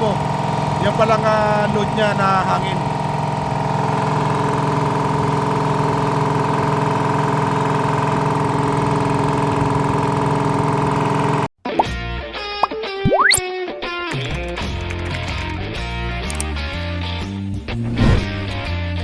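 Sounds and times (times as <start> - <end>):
piston air compressor humming: 0.0 - 11.5
guitar music: 11.7 - 19.0.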